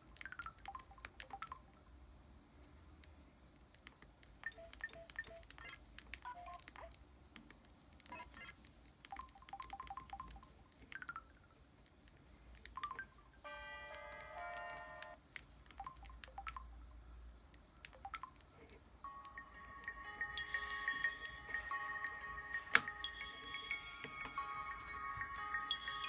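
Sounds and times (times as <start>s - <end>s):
small clicks: 3.0s - 13.1s
held electronic chord: 19.1s - 26.0s.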